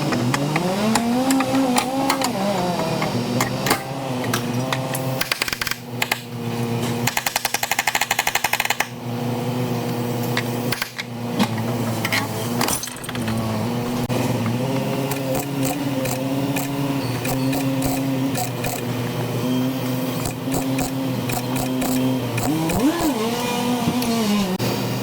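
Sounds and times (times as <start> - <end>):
rapid tool rattle: 15.0 - 18.9, 20.2 - 23.2.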